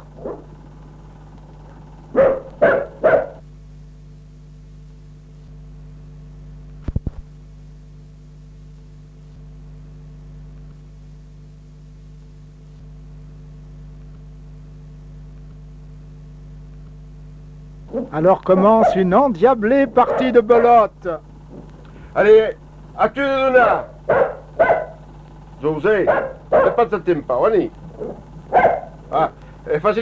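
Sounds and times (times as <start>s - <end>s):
steady tonal hum: 0.0s - 3.9s, 12.9s - 30.0s
dog barking: 0.2s - 0.6s, 2.1s - 3.4s, 17.9s - 19.2s, 20.0s - 20.8s, 23.7s - 25.1s, 26.0s - 26.9s, 28.0s - 29.0s.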